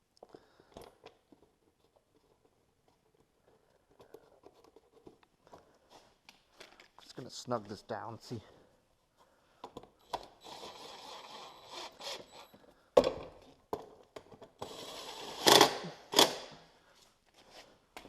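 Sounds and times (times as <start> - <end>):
steady mechanical tool noise: 10.4 - 12.6.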